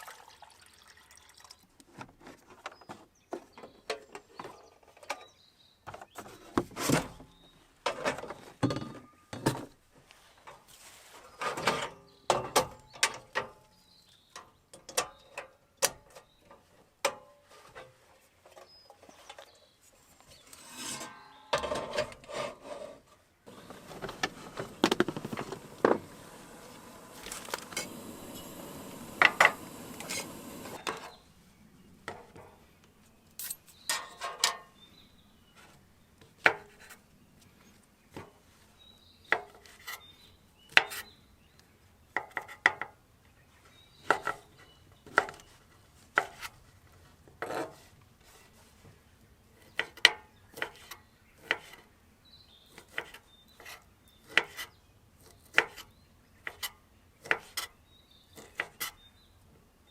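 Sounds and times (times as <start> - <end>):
rustling: 10.0 - 11.6, 22.3 - 31.0.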